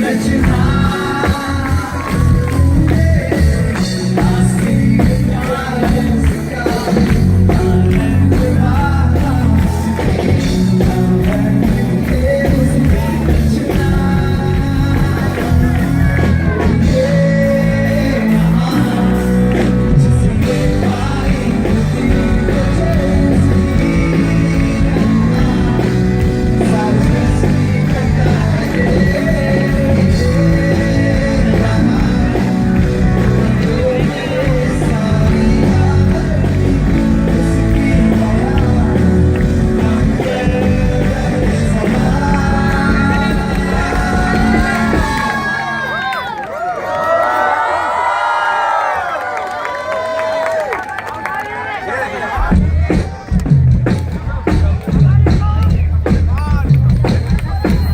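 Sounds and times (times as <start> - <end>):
lead vocalist singing: 0.0 - 46.2
live rock band playing: 0.0 - 46.4, 52.4 - 57.9.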